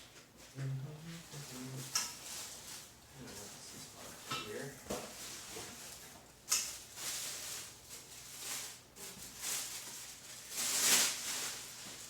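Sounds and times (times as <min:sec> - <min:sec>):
packaging rustling and scraping: 0:01.5 - 0:03.6, 0:05.0 - 0:12.0.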